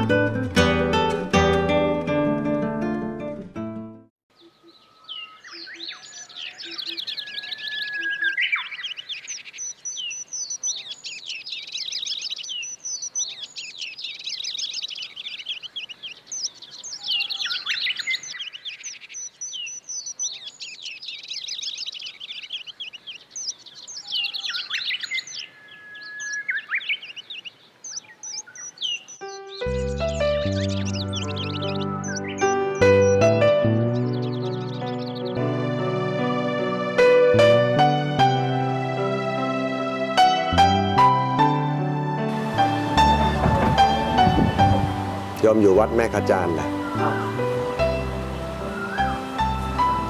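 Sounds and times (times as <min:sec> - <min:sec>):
birds chirping and twittering: 0:04.3 - 0:35.5, 0:42.3 - 0:50.0.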